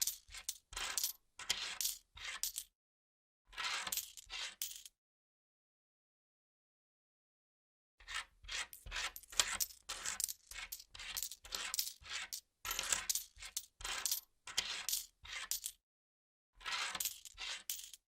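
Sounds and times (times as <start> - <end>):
coins clinking onto a pile: 0.0 - 2.7, 3.9 - 4.9, 8.7 - 12.0, 12.7 - 15.8, 16.8 - 18.0.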